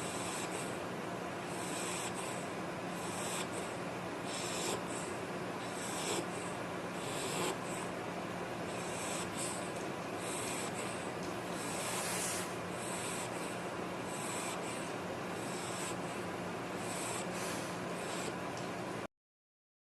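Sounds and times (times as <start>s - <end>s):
pet snoring: 0.0s - 0.8s, 1.5s - 8.0s, 8.7s - 16.2s, 16.8s - 18.4s
faint steady hum: 0.0s - 19.1s.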